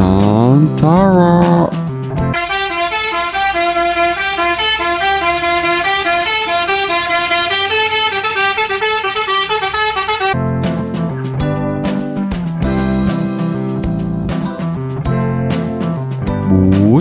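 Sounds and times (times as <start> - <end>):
multi-tone bus horn melody: 2.3 - 10.4.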